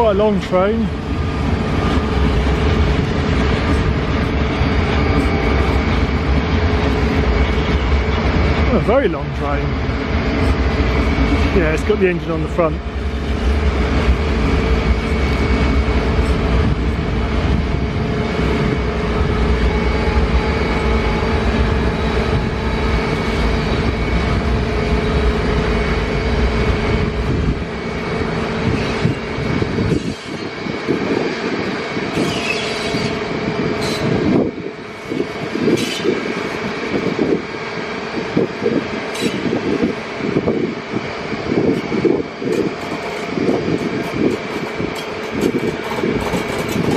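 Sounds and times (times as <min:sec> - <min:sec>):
train wheels rumbling on rail: 0:00.0 - 0:46.9
wagons rattling and clicking: 0:42.5 - 0:46.9.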